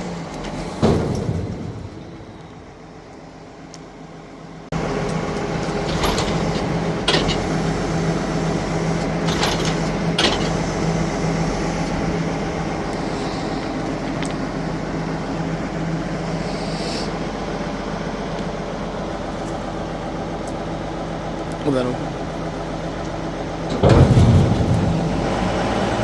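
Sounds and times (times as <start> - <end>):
tractor engine running: 0.0 - 26.0
metallic clanks from baler: 0.4 - 2.7, 5.6 - 7.8, 9.0 - 11.0, 23.6 - 26.0.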